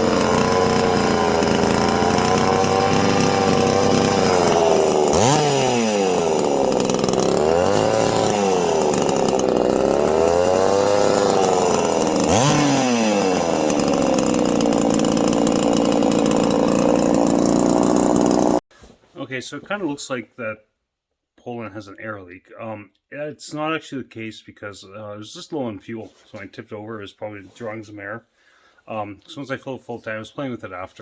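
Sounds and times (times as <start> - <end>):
chainsaw engine surging: 0.0 - 18.6.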